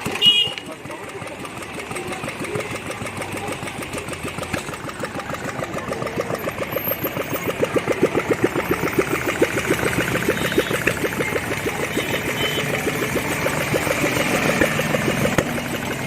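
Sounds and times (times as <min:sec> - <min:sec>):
single-cylinder engine running: 0:00.0 - 0:16.0.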